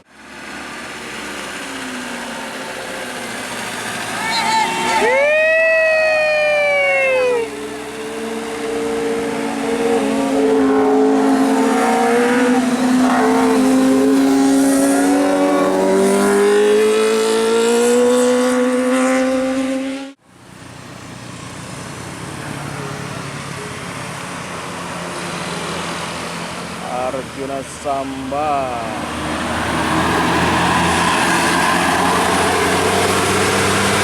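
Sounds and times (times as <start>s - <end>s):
steady vehicle noise: 0.0s - 34.0s
bus horn wavering tone: 9.5s - 14.4s.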